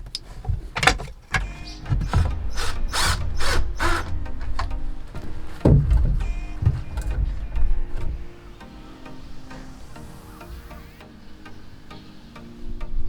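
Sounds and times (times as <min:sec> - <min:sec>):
sharp clicks and knocks: 0:00.0 - 0:08.4
rasping strokes: 0:00.0 - 0:13.0
low rumble: 0:01.4 - 0:11.0.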